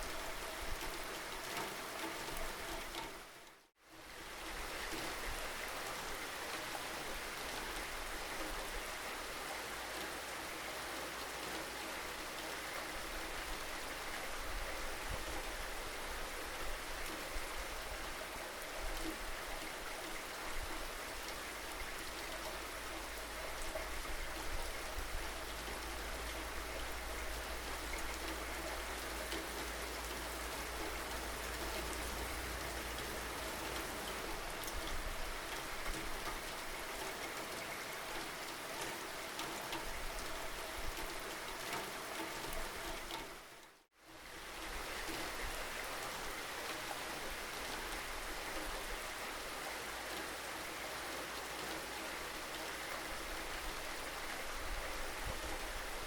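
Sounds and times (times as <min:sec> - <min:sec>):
steady rainfall: 0:00.0 - 0:56.0.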